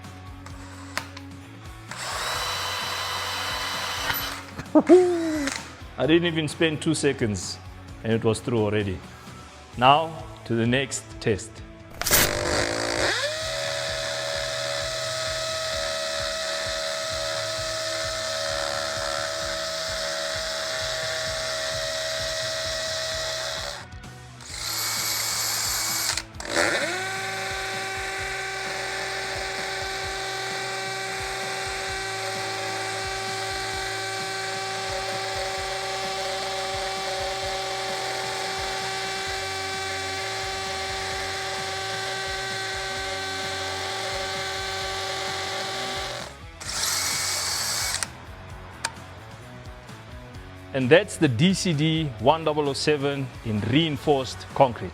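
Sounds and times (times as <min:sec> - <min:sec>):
hammer drill drilling into concrete: 0:00.4 - 0:05.8, 0:11.9 - 0:48.2
drill hiss: 0:01.9 - 0:05.7, 0:12.0 - 0:23.8, 0:24.4 - 0:48.1.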